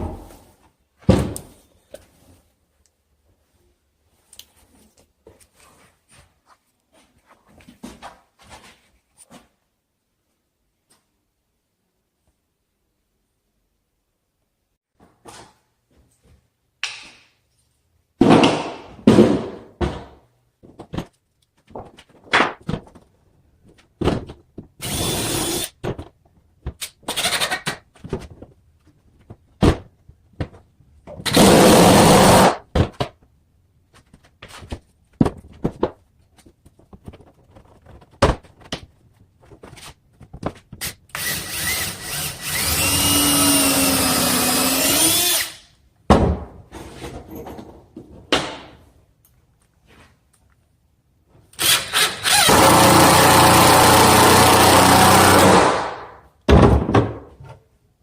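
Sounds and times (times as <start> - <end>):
power drill driving screws: 24.8 - 25.7, 31.3 - 32.6, 41.1 - 45.6, 51.6 - 55.8
knocks on cabinets: 46.1 - 46.6, 56.5 - 57.4.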